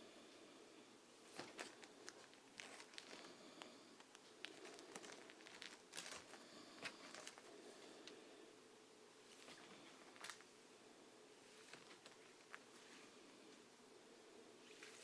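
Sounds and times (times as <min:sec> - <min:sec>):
paper crinkling and rustling: 0:01.3 - 0:07.5, 0:09.3 - 0:10.5, 0:11.5 - 0:13.1.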